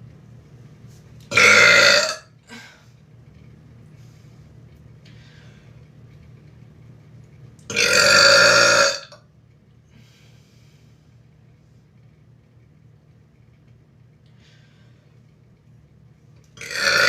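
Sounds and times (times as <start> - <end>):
person burping: 1.3 - 2.3, 7.7 - 9.2, 16.6 - 17.0.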